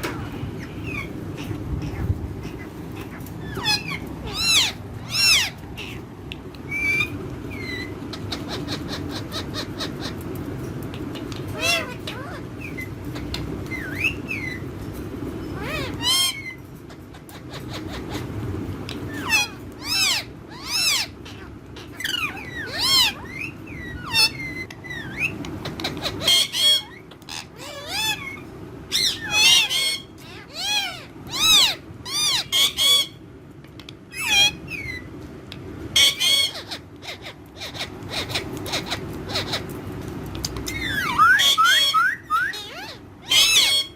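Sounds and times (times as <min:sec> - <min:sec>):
parrots squawking and whistling: 0:00.0 - 0:35.2, 0:35.8 - 0:43.9
parrot screeches: 0:00.2 - 0:06.0, 0:15.5 - 0:16.6, 0:19.1 - 0:33.2, 0:36.0 - 0:39.7, 0:40.7 - 0:43.9.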